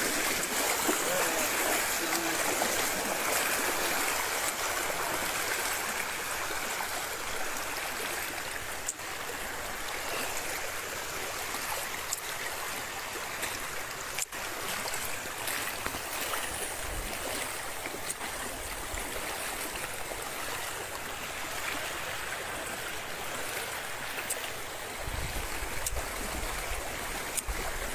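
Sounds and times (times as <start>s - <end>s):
floodwater rushing: 0.0s - 27.9s.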